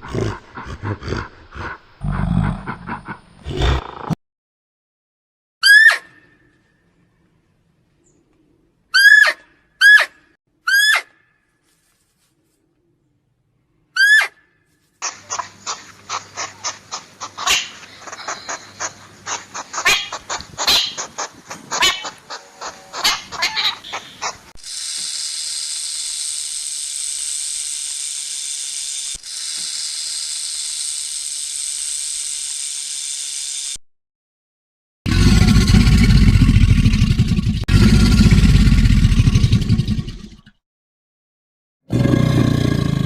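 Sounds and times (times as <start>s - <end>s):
animal hissing: 0.0s - 4.2s, 15.0s - 27.9s
animal clicks and chirps: 15.0s - 25.2s.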